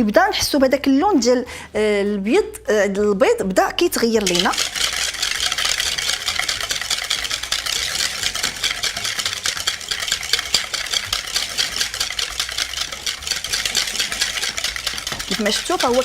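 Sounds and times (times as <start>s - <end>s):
whisk beating eggs in a bowl: 3.9s - 16.0s.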